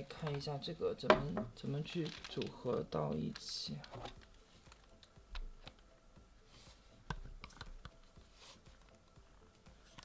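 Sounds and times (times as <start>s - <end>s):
soft clicks of plastic parts: 1.8s - 5.9s.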